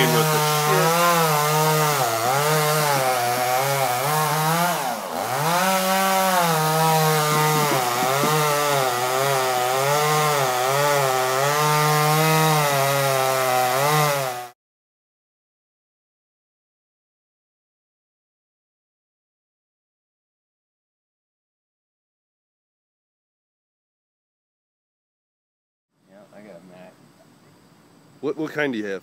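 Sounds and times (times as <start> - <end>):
chainsaw cutting wood: 0.0 - 14.6.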